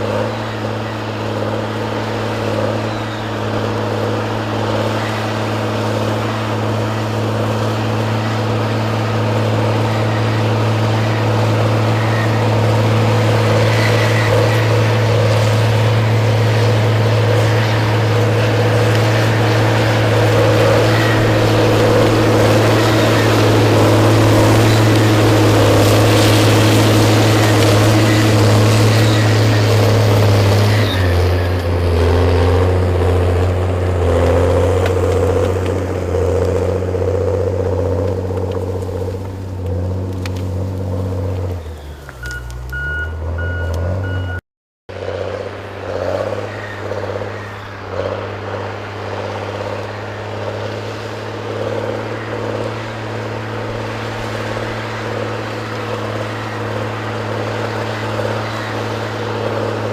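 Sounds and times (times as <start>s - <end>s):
heavy machine engine running: 0.0s - 59.9s
high-pitched beeping: 42.2s - 44.4s.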